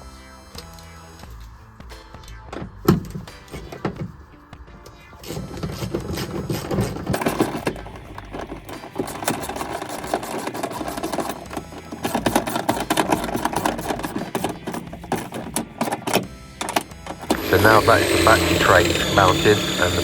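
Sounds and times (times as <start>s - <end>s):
power drill rattling on metal: 5.2s - 20.0s.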